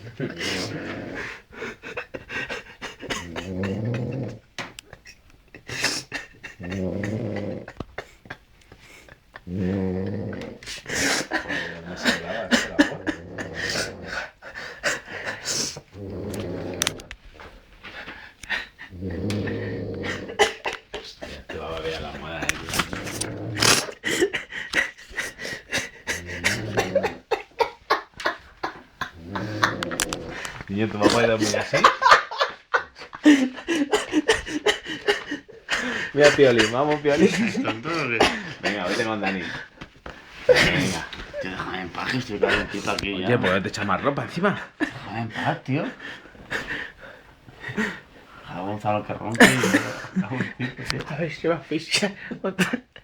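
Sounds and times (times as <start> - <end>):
stifled laughter: 0.0 - 9.7, 10.8 - 15.8, 18.5 - 39.8, 49.3 - 51.1
person snoring: 3.2 - 4.4, 6.6 - 7.7, 9.5 - 14.3, 15.4 - 17.1, 18.9 - 20.4, 22.5 - 24.2, 26.0 - 27.3, 29.1 - 31.5
man snoring wheezily: 6.7 - 7.7, 18.9 - 20.4, 22.7 - 24.0.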